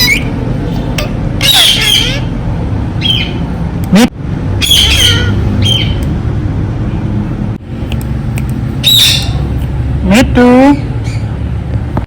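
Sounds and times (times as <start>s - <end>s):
parakeet squawking: 0.0s - 2.4s, 3.0s - 3.5s, 4.6s - 6.0s, 8.8s - 9.5s
steady low hum: 0.0s - 12.0s.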